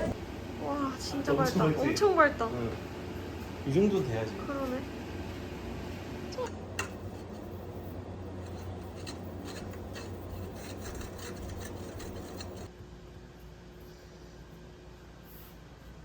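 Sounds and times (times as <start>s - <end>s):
scratchy scraping: 6.8s - 12.7s.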